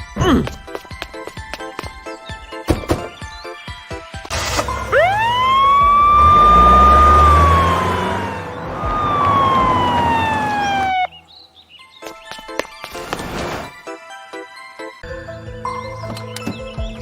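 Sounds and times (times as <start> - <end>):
low engine rumble: 4.3 - 11.1
siren wailing: 4.3 - 11.1.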